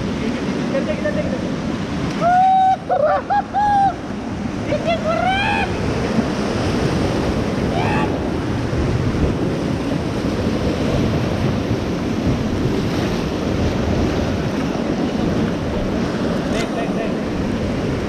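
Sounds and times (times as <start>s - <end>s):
whitewater river roaring: 0.0s - 18.0s
wind buffeting microphone: 0.0s - 18.0s
person calling out: 4.7s - 5.8s.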